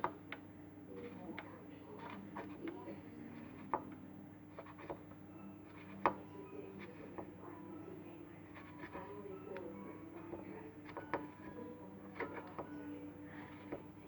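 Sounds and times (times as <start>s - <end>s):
clicks and taps of handling: 8.6s - 13.9s.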